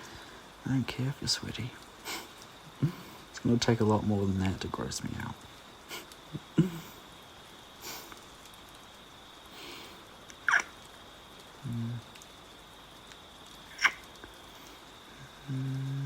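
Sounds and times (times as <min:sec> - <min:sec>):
man breathing softly: 0:09.5 - 0:10.1
man humming: 0:11.6 - 0:12.0, 0:15.2 - 0:16.0.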